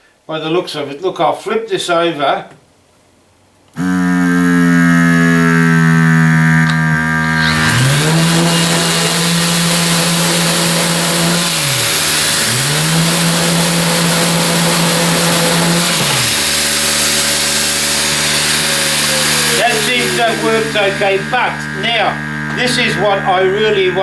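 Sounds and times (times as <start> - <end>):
vacuum pump motor humming: 3.8 - 24.0
air hissing through hose: 7.4 - 22.7.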